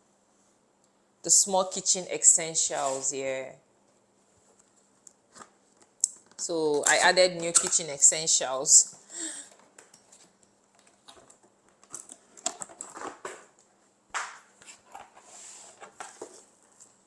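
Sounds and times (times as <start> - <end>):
packaging rustling and knocking: 9.7 - 13.6, 14.2 - 17.0.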